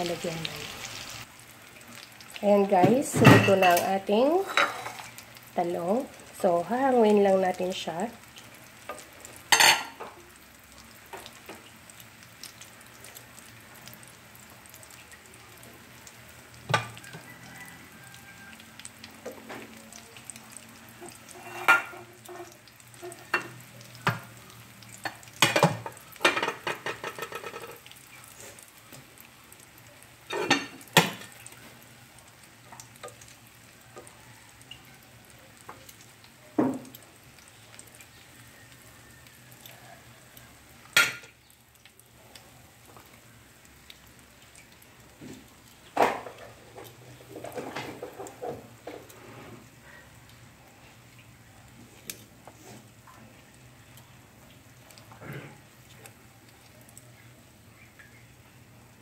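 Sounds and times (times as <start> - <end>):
eggplant sizzling in oil: 0.0 - 59.0
spatula scraping a pan: 21.0 - 23.4.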